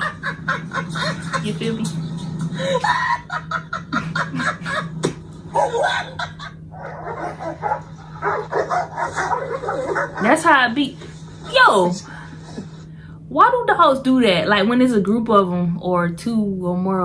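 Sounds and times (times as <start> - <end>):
dogs barking: 5.5 - 11.1.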